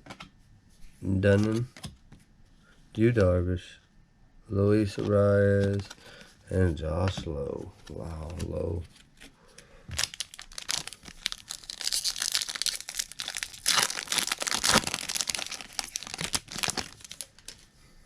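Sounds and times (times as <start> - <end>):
wrapper tearing and crinkling: 9.9 - 17.6.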